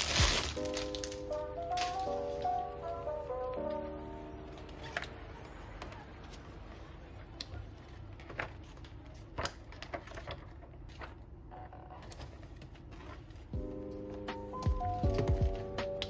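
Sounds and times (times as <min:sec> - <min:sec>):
background music: 0:00.0 - 0:07.2, 0:13.5 - 0:16.0.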